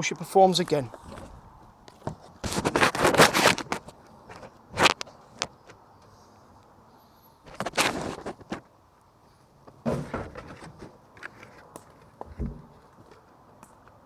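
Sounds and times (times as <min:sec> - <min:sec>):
scraping and rustling: 0:00.6 - 0:06.2, 0:07.5 - 0:08.7, 0:09.7 - 0:13.9.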